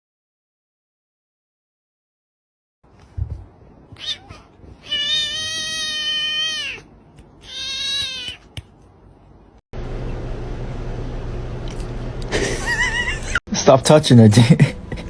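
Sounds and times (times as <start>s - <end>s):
cat meowing: 3.9s - 8.6s
steady low hum: 8.5s - 13.4s.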